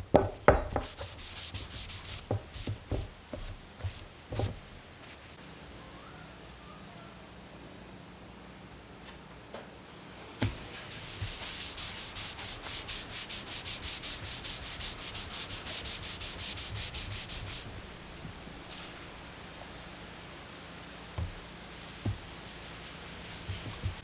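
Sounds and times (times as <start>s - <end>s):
hand sanding wood: 0.5s - 4.6s, 10.4s - 18.9s, 21.2s - 24.0s.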